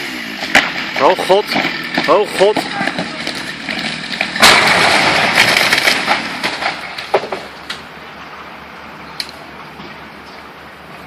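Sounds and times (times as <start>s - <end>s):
falling tree crashing: 0.0s - 7.9s
sharp cracks: 0.3s - 7.9s.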